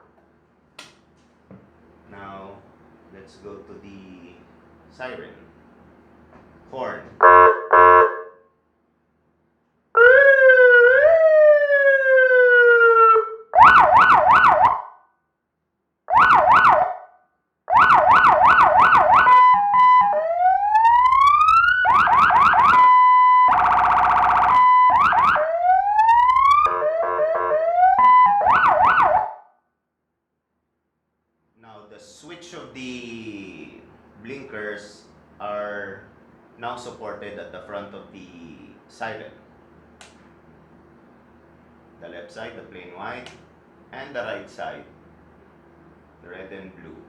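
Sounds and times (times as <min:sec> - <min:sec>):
buzzy steady horn blast: 0:07.2 - 0:08.4
electronic emergency siren: 0:07.2 - 0:08.4, 0:10.0 - 0:15.0, 0:16.1 - 0:29.5.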